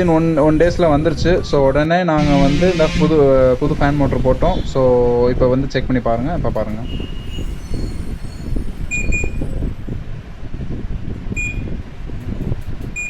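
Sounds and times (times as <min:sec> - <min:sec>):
air conditioner fan rumble: 0:00.0 - 0:13.0
short electronic beeps: 0:06.8 - 0:09.5, 0:11.4 - 0:11.7.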